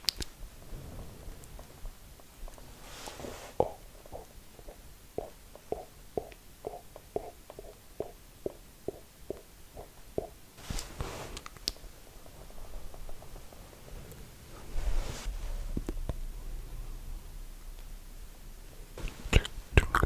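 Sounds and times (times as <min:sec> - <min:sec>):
wet mouth pops and lip smacks: 0:00.0 - 0:00.3, 0:03.6 - 0:10.4, 0:19.0 - 0:20.0.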